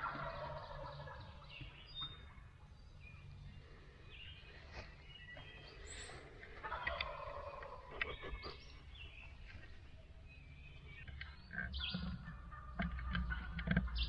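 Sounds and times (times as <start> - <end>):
turkey gobbling: 0.0 - 1.4, 6.6 - 8.6, 11.7 - 14.0
songbirds chirping faintly: 0.0 - 14.0.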